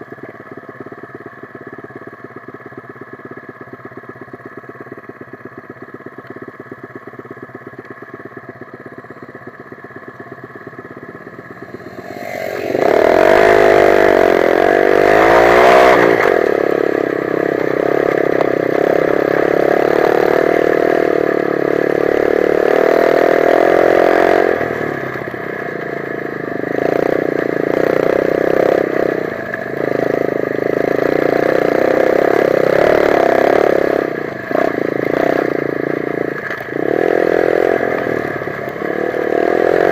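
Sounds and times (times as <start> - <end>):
dirt bike engine revving: 11.1 - 39.9.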